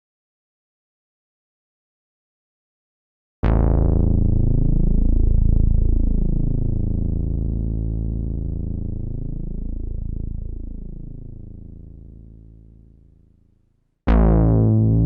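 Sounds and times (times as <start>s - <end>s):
deep sustained synthesizer bass note: 3.4s - 13.2s, 14.1s - 15.0s.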